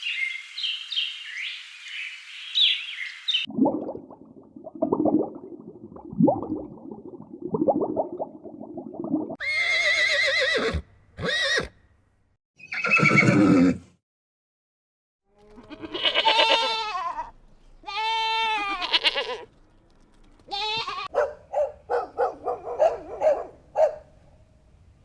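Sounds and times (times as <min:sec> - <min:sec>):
horse neighing: 0:09.4 - 0:11.7, 0:12.6 - 0:13.9, 0:15.5 - 0:17.3.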